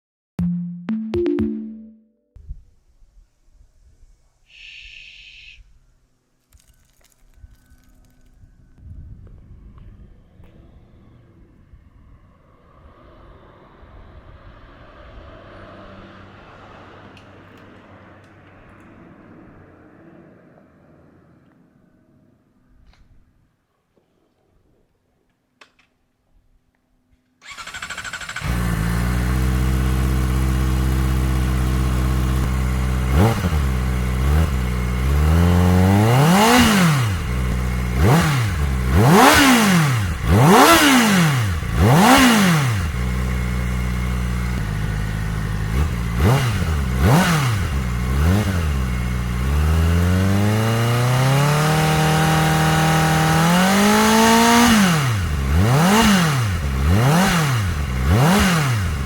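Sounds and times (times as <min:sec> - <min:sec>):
motorcycle engine revving: 0:27.4 - 0:59.0.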